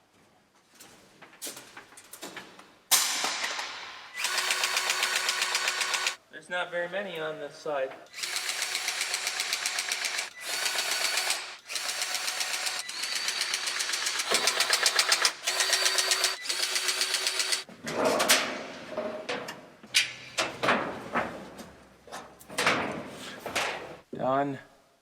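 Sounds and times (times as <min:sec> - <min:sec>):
grease gun motor ticking: 0:04.2 - 0:06.2, 0:08.1 - 0:17.6.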